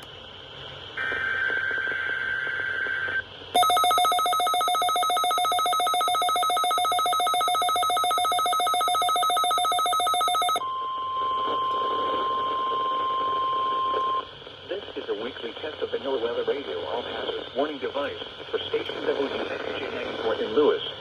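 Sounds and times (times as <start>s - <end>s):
steady single-pitch alarm tone: 3.6s - 14.3s.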